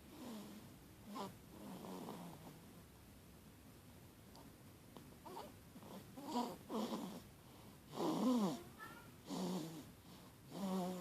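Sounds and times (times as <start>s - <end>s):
baby snoring: 0.0s - 2.7s, 5.2s - 11.0s.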